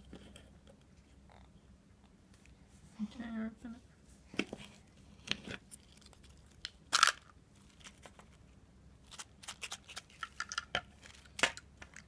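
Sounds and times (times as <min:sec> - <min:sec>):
crunch: 0:05.6 - 0:12.0
plastic clicks and crinkles: 0:09.1 - 0:12.0.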